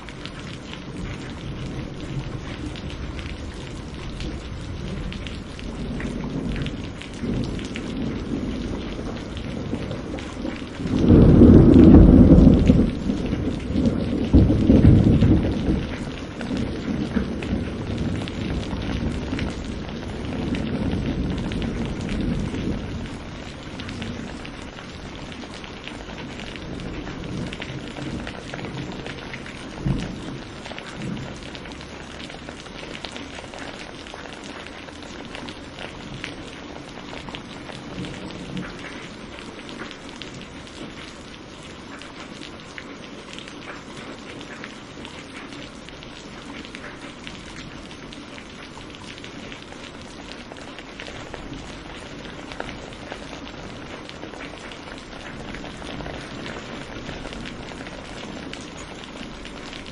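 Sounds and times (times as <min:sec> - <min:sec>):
steady rain with drips: 0:00.0 - 0:59.9
low thunder rumble: 0:00.5 - 0:32.6.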